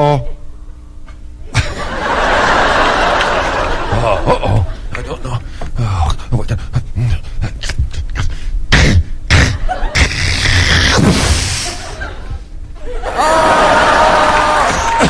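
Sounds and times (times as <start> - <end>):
man making mouth clicks and pops: 7.5 - 10.6
vocal hissing whoosh: 10.0 - 12.0.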